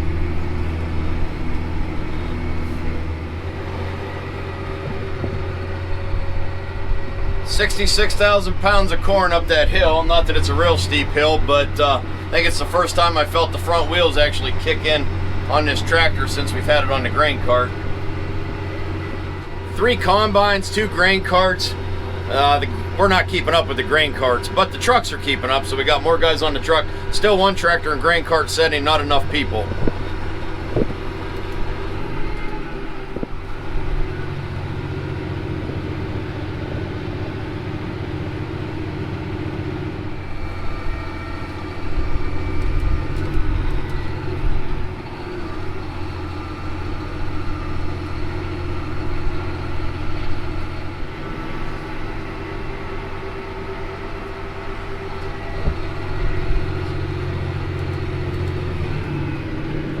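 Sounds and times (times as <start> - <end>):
tractor engine running under load: 0.0 - 60.0.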